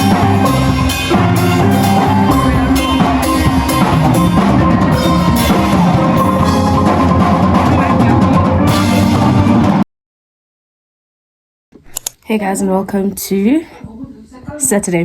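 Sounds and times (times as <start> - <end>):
instrumental song with drum beat: 0.0 - 9.8.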